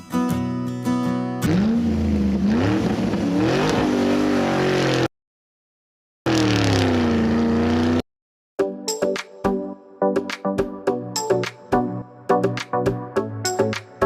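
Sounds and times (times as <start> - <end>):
vehicle engine revving: 1.4 - 5.1, 6.3 - 8.0.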